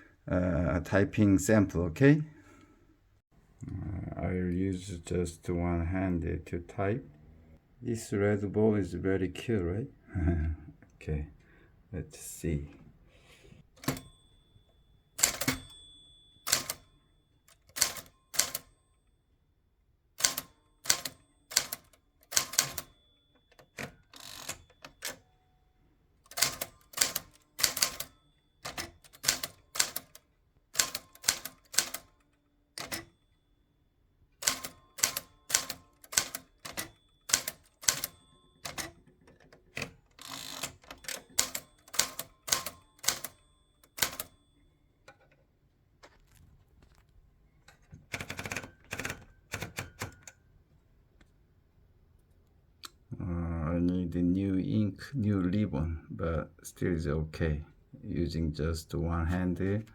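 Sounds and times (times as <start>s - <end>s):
typewriter type strikes: 15.2s - 15.8s, 16.4s - 16.9s, 17.6s - 18.7s, 20.2s - 25.2s, 26.3s - 30.2s, 30.8s - 32.2s, 34.4s - 39.0s, 39.7s - 44.4s.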